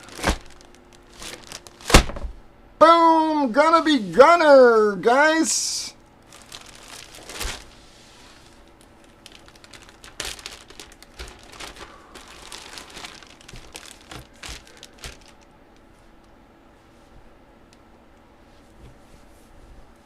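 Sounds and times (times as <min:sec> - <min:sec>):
card packaging crinkling: 0:00.0 - 0:02.2, 0:06.2 - 0:15.9.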